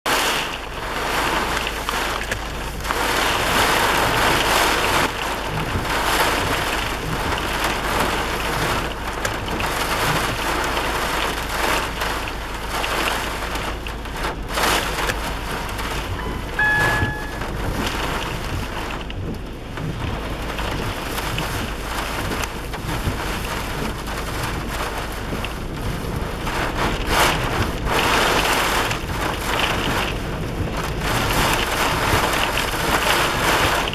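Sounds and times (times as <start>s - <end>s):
rain: 0.1s - 33.9s
short beep: 16.1s - 17.8s.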